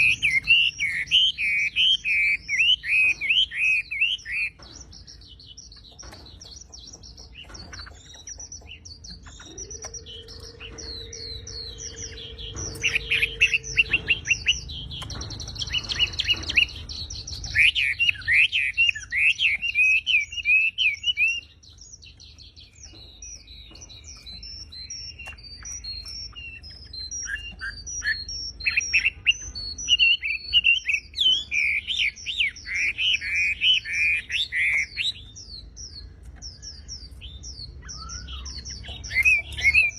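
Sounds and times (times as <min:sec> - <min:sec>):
bird chirping and whistling: 0:00.0 - 0:39.9
low hum: 0:08.9 - 0:17.6.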